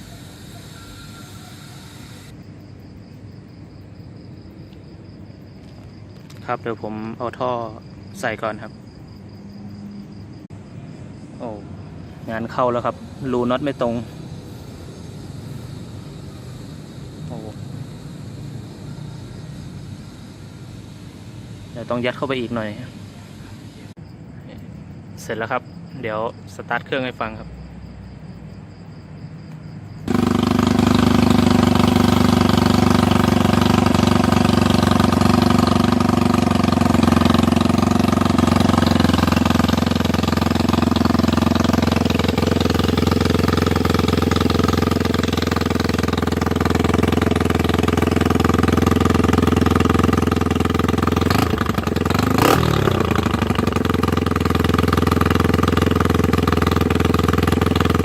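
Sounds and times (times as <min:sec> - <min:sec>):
motorcycle engine starting and idling: 0:00.0 - 0:02.6, 0:29.9 - 0:58.0.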